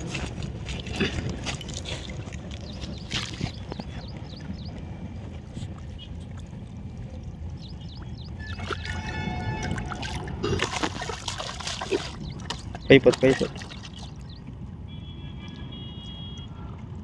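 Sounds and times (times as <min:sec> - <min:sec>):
wind rumbling on microphone: 0:00.0 - 0:12.9
small bird chirping: 0:02.6 - 0:04.8, 0:07.6 - 0:09.1, 0:11.8 - 0:14.5.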